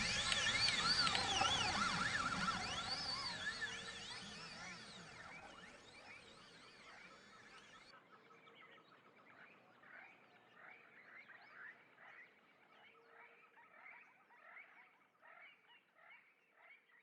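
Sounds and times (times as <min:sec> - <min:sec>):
small animals chirping: 0:00.0 - 0:07.0.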